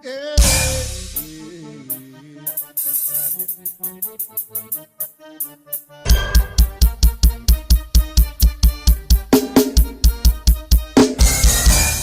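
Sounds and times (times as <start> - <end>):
drum kit and band playing: 0.4 - 1.6, 2.5 - 4.4, 6.1 - 12.0
keyboard playing: 0.4 - 12.0
cymbal ticks: 1.2 - 4.8.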